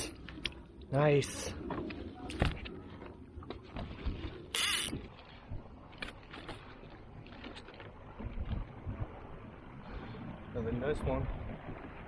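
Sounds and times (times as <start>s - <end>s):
wind rumble on microphone: 1.5s - 12.0s.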